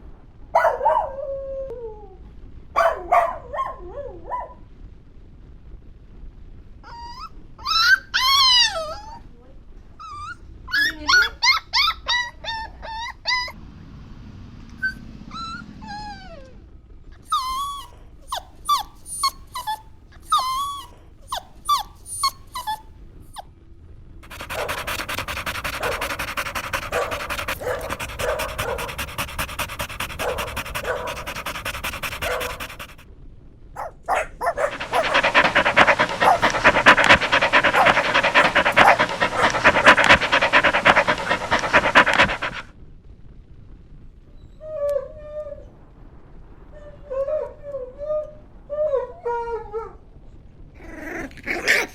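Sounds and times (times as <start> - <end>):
puppies whimpering and yipping: 7.0 - 9.2, 17.3 - 22.8, 24.2 - 33.0, 33.8 - 42.6
puppies panting: 18.6 - 20.7, 21.3 - 22.8, 24.2 - 33.0, 33.8 - 42.7.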